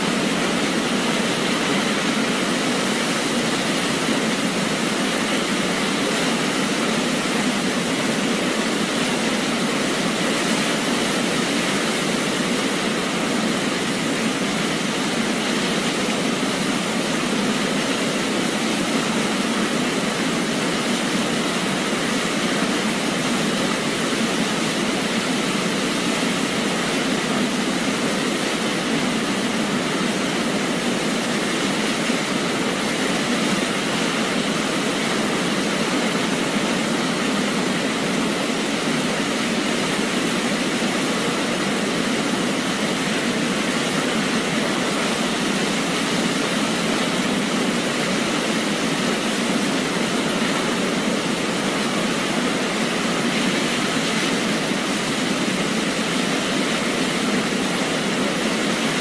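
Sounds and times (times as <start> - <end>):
waterfall rushing: 0.0 - 59.0.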